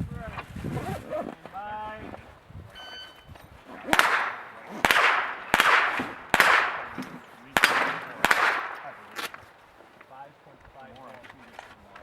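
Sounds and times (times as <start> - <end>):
rifle gunshots echoing: 3.7 - 9.7.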